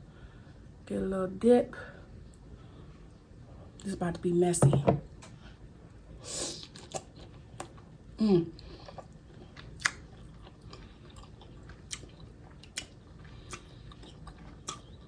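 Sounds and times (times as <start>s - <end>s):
wet chewing mouth clicks: 8.8s - 15.0s.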